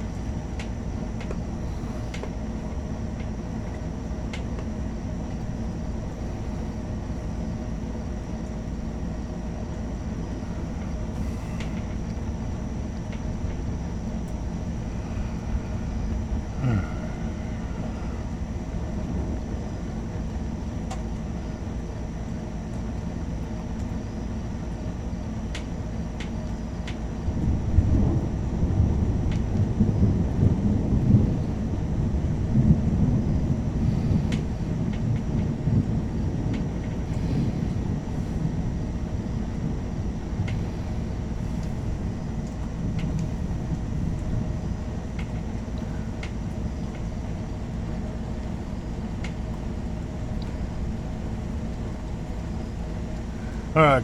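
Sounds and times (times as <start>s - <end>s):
steady low hum: 0.0s - 54.0s
distant thunder rumbling: 27.2s - 53.8s.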